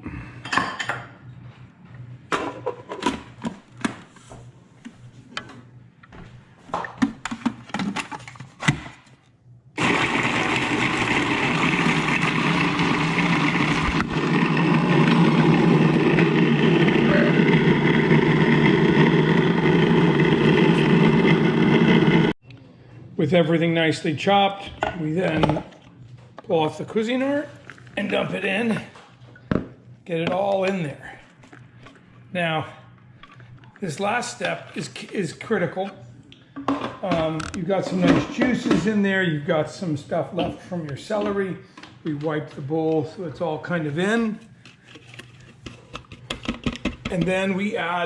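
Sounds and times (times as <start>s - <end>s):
food processor motor chopping: 9.8s - 22.4s.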